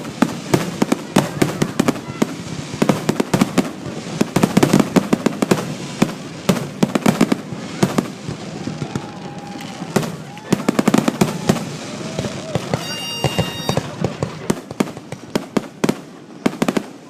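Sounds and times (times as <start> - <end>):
crackling firework reports: 0.0 - 17.0
fireworks shells bursting: 12.2 - 15.8.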